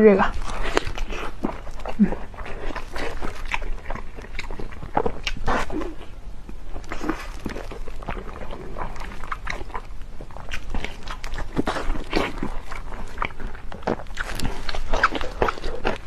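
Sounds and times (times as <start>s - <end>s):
person chewing food: 0.2s - 16.0s.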